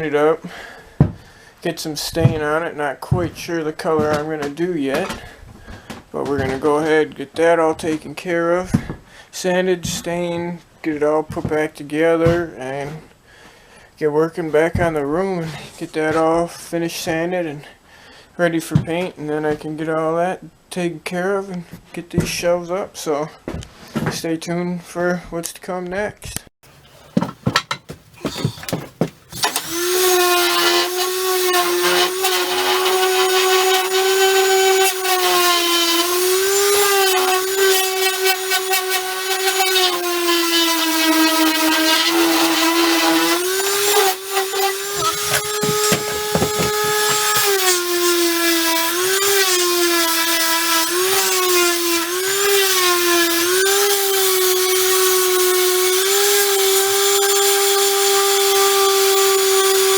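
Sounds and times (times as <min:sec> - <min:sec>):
handling knocks: 0:26.7 - 0:29.7, 0:44.9 - 0:47.6
electric sander on wood: 0:26.8 - 0:59.9.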